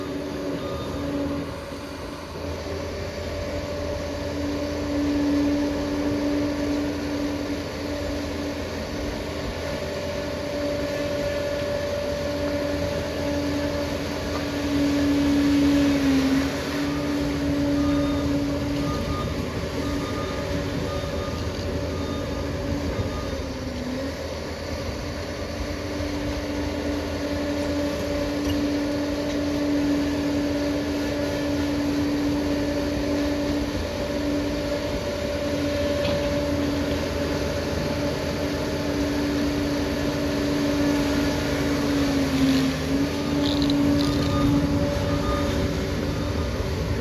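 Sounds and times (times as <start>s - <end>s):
mechanical drone with hum: 0.0s - 47.0s.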